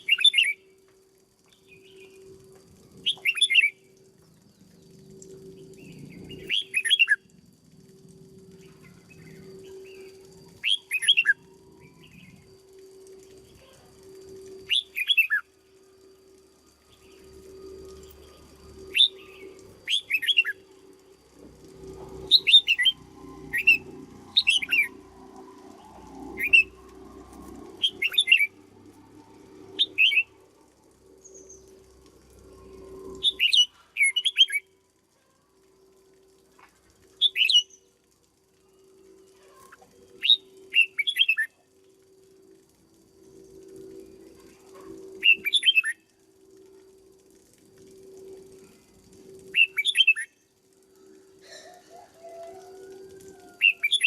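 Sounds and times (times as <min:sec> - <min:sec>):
steady low hum: 0:00.0 - 0:52.0
bird singing falling phrases: 0:08.8 - 0:12.5.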